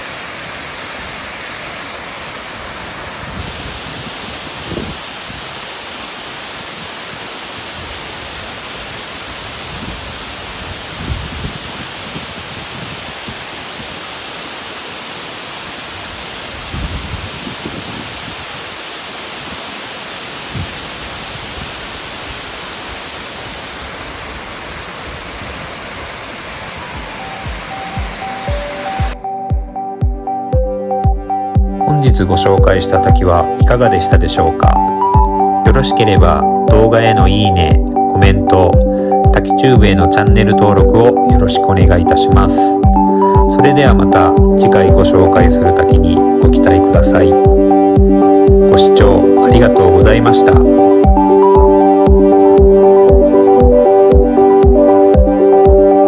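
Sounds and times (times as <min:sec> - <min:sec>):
waterfall roaring: 0:00.0 - 0:29.2.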